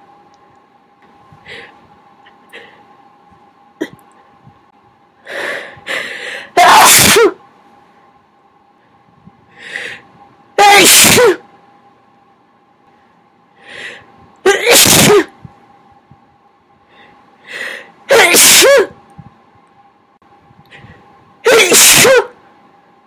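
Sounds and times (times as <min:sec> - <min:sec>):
quiet inhale: 0:01.4 - 0:01.9, 0:05.2 - 0:06.6, 0:09.5 - 0:10.2, 0:13.6 - 0:14.2, 0:16.8 - 0:18.0
person sneezing: 0:06.5 - 0:07.4, 0:10.6 - 0:11.4, 0:14.5 - 0:15.3, 0:18.1 - 0:19.0, 0:21.5 - 0:22.4.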